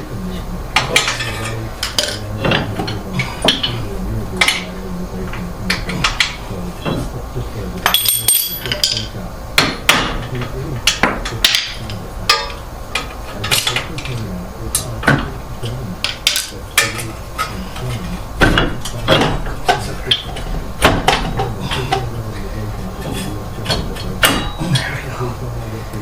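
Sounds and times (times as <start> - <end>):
tools and steel parts clanking: 0.8 - 3.8, 5.3 - 7.1, 7.8 - 14.2, 16.0 - 22.0, 23.0 - 25.0.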